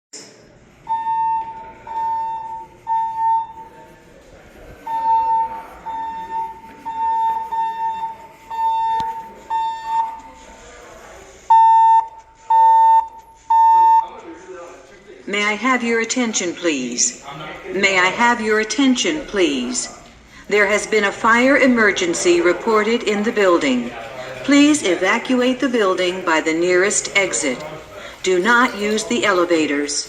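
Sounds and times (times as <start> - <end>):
fire alarm beeps: 0.8 - 3.9, 4.8 - 10.3, 11.5 - 14.2.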